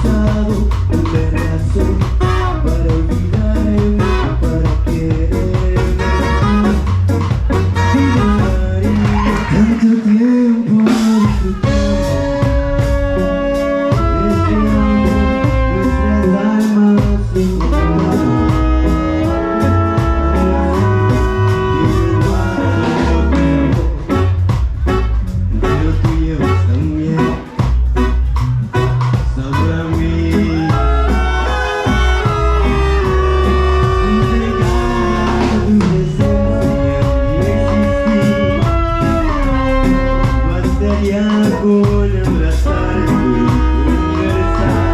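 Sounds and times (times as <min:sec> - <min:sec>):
person singing: 0:00.0 - 0:24.5, 0:25.5 - 0:28.2, 0:28.8 - 0:44.9
live band playing: 0:00.0 - 0:44.9
steady drum beat: 0:00.0 - 0:44.9
saxophone sustained harmony: 0:11.4 - 0:16.6, 0:17.7 - 0:40.8, 0:42.7 - 0:44.9.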